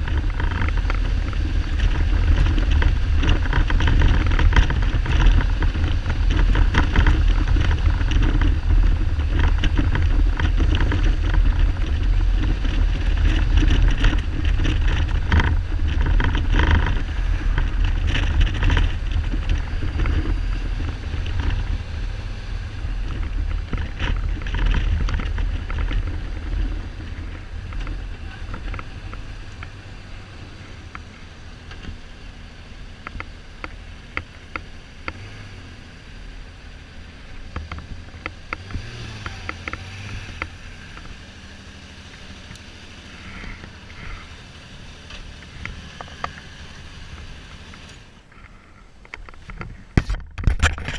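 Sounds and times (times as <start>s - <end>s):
wind buffeting microphone: 0.0s - 30.8s
motorcycle engine rumble: 0.0s - 50.9s.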